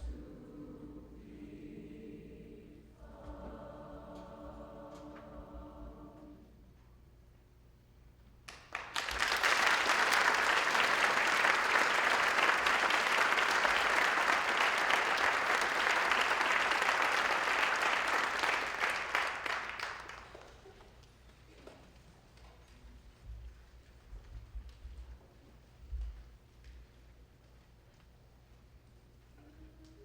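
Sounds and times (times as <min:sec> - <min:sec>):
audience applauding: 0:08.5 - 0:21.0.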